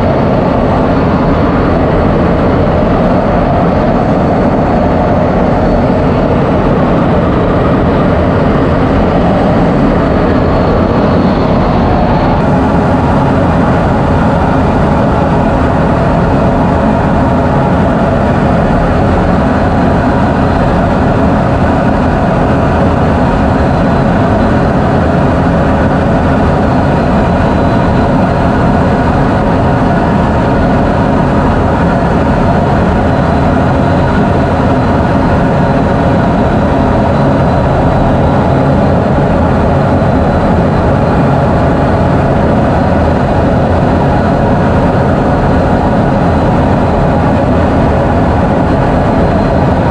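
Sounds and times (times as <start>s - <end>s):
jet engine drone: 0.0s - 49.9s.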